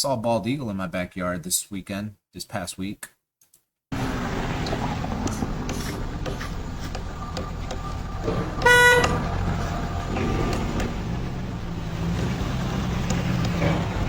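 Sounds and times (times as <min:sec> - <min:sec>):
engine and traffic rumble: 0:03.9 - 0:14.0
vehicle horn toot: 0:08.6 - 0:09.4.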